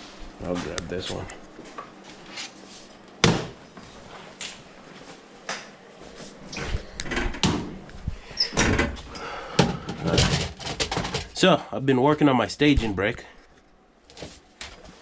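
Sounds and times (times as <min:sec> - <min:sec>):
rattling and rustling: 0:08.6 - 0:11.4
objects knocking and clattering: 0:09.6 - 0:11.4.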